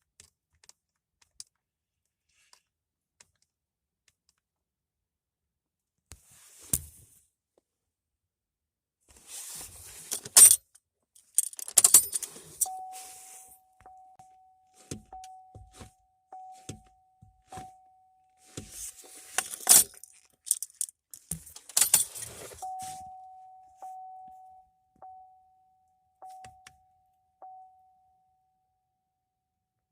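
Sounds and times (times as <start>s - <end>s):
keys jangling: 11.2s - 12.7s, 19.3s - 22.6s
car warning chime dinging: 12.6s - 18.9s, 21.8s - 28.4s.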